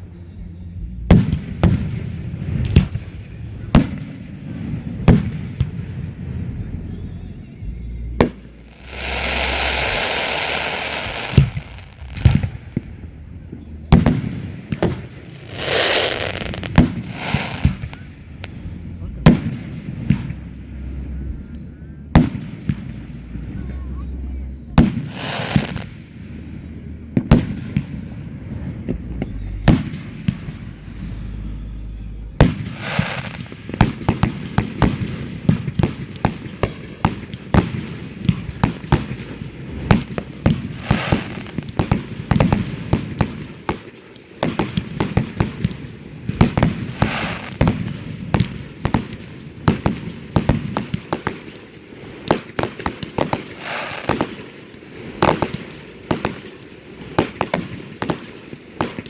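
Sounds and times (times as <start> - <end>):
low rumble: 0.0 - 3.7, 5.8 - 25.1, 25.8 - 32.8
fireworks bangs and crackles: 0.0 - 59.0.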